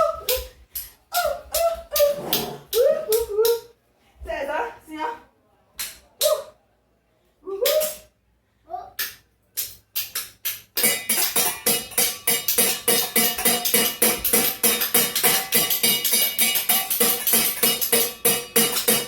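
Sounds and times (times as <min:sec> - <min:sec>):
spoons clacking rhythm: 0:09.0 - 0:19.0.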